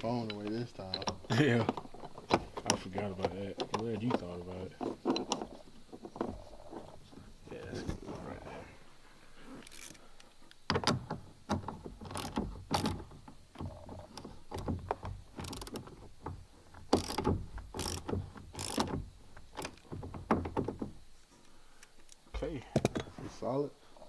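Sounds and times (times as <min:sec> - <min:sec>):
ratchet wrench clicking: 0:17.0 - 0:19.0.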